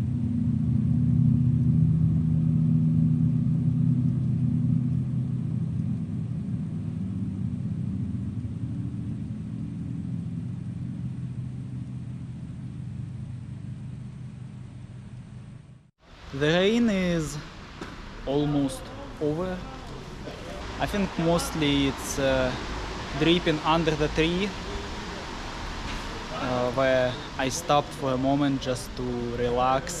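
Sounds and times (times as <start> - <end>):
ambient drone music: 0.0 - 15.2, 16.1 - 30.0.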